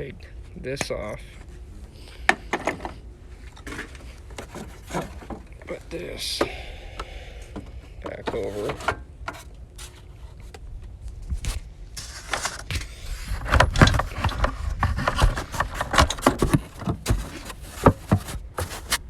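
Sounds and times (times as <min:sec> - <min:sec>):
car part clicking and scraping: 0:03.5 - 0:05.6, 0:08.1 - 0:10.6, 0:11.4 - 0:19.0.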